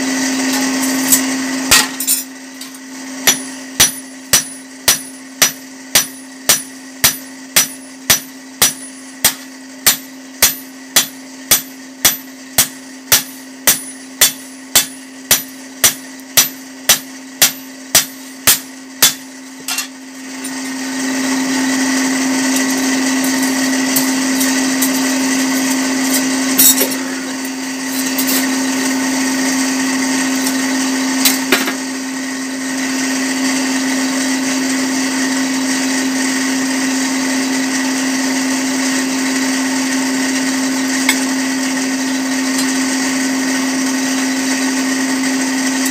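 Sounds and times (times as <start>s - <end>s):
hammer beating on anvil: 0.5s - 20.6s
electric blower hum: 14.5s - 45.9s
power grinder whirring: 18.7s - 45.9s.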